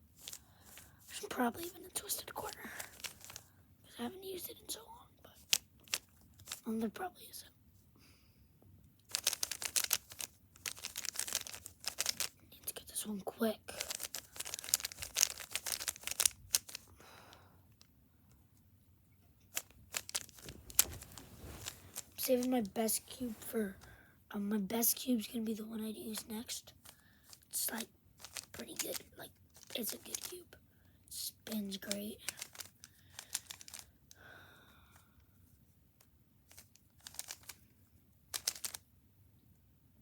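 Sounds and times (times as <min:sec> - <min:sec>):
puzzle cube clicking: 0:00.2 - 0:03.5, 0:05.4 - 0:06.7, 0:09.0 - 0:12.4, 0:13.8 - 0:16.9, 0:19.4 - 0:23.5, 0:26.7 - 0:30.4, 0:31.4 - 0:34.2, 0:36.5 - 0:37.6, 0:38.3 - 0:38.8.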